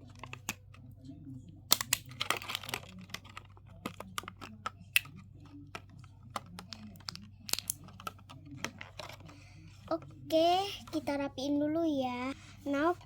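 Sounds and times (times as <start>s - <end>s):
plastic cases clicking and clattering: 1.7s - 5.1s.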